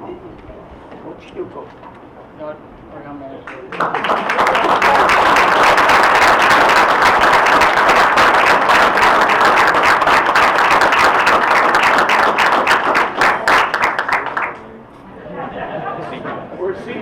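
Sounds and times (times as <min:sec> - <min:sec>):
audience applauding: 0:03.5 - 0:14.6.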